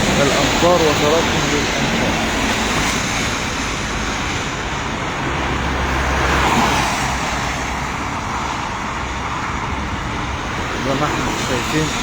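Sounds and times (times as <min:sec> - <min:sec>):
engine rumble: 0:00.0 - 0:12.0
tyres hissing on wet road: 0:00.0 - 0:12.0.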